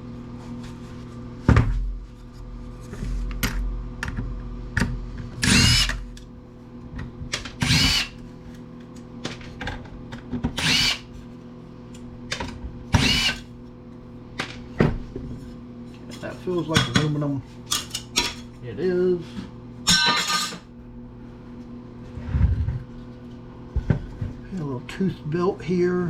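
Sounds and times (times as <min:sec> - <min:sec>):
steady low hum: 0:00.0 - 0:26.0
power screwdriver whirring: 0:05.4 - 0:06.0, 0:07.6 - 0:08.2, 0:10.6 - 0:11.1, 0:13.0 - 0:13.5.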